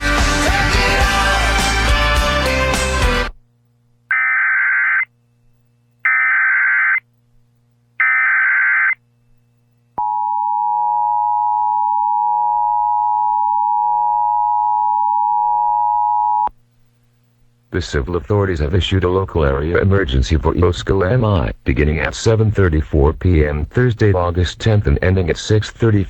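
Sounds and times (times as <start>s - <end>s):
two-tone attention alarm: 4.1s - 5.1s, 6.1s - 7.0s, 8.0s - 9.0s
warbling digital header tones: 4.1s - 5.1s, 6.1s - 7.0s, 8.0s - 9.0s.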